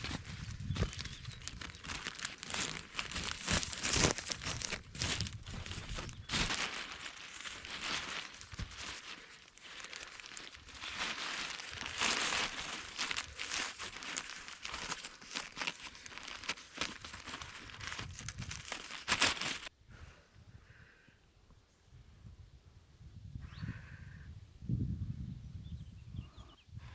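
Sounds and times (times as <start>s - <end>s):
dry material rustling and crinkling: 0.0s - 19.7s.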